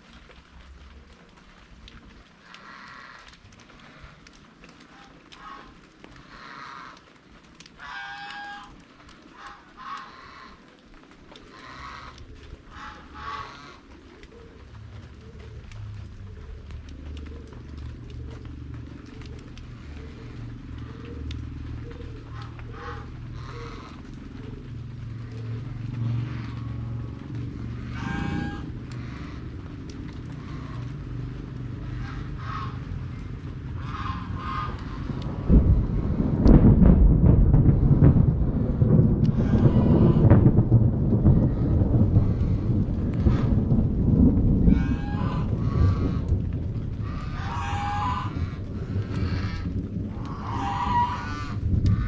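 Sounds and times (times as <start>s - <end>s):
drizzling rain: 0.0s - 52.0s
steady low rumble: 0.0s - 52.0s
farmyard birds calling: 11.4s - 18.5s, 19.1s - 29.4s, 31.8s - 35.2s, 44.7s - 46.3s, 47.0s - 52.0s
rolling thunder: 11.5s - 52.0s.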